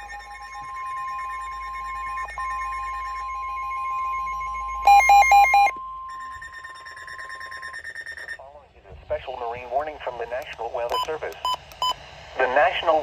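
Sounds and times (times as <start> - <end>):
repeating electronic beeps: 0.0 - 8.5
steady warning tone: 0.0 - 13.0.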